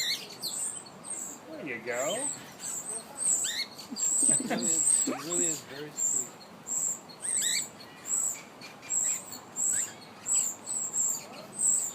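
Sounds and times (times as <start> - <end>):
birds chirping: 0.0 - 11.9.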